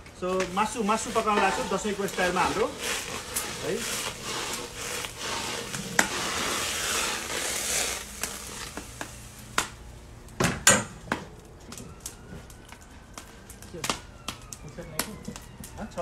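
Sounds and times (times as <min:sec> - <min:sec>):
hot oil sizzling in a pot: 0:00.0 - 0:11.0.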